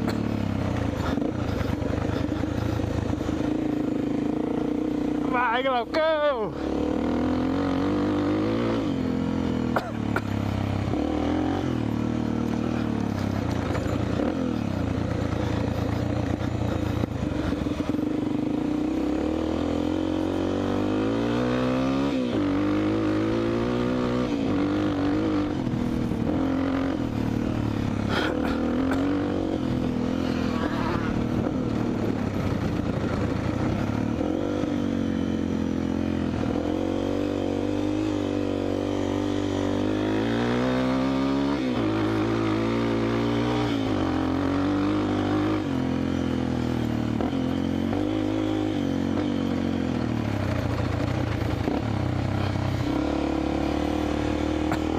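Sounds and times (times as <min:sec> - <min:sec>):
dirt bike engine revving: 0:00.0 - 0:54.9.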